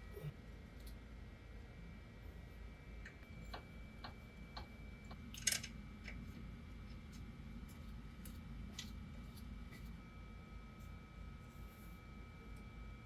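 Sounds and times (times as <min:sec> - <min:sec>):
tools and parts clicking: 0:05.3 - 0:05.7.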